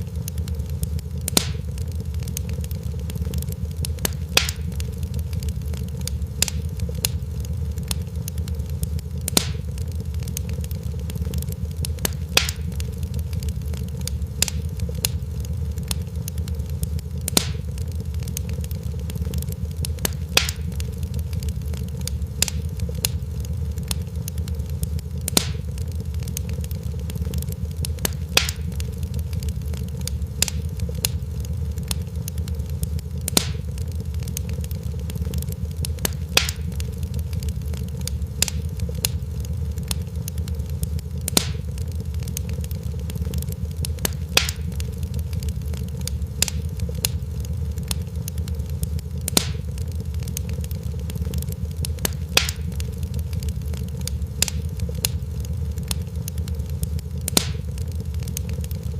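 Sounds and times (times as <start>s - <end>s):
fire crackling: 0.0s - 58.9s
sharp pops of fire: 0.0s - 58.9s.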